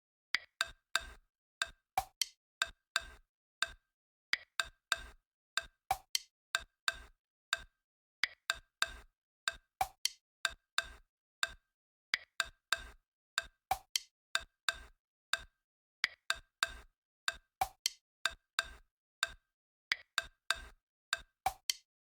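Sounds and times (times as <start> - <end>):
wood block percussion clicks: 2.0 - 2.3, 6.9 - 10.2, 13.7 - 18.0, 21.5 - 21.8.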